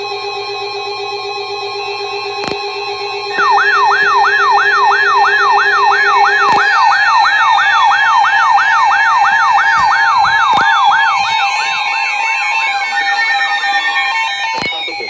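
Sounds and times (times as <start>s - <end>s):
electronic siren yelping: 3.3s - 15.0s.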